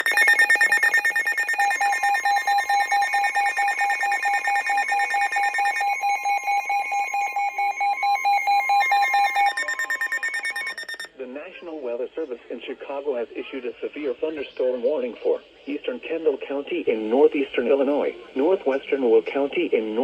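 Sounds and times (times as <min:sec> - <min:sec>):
rapid electronic beeping: 0:00.0 - 0:11.1
steady warning alarm tone: 0:00.0 - 0:11.1.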